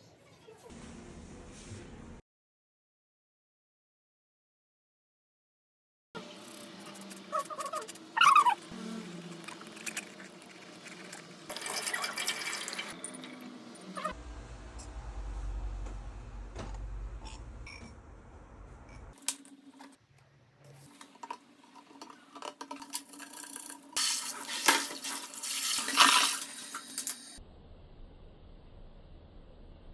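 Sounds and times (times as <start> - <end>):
low hum: 13.0 - 19.2, 27.4 - 29.9.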